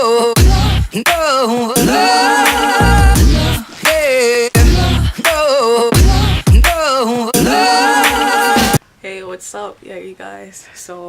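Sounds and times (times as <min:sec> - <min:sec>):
r and b song with heavy bass beat: 0:00.0 - 0:08.8.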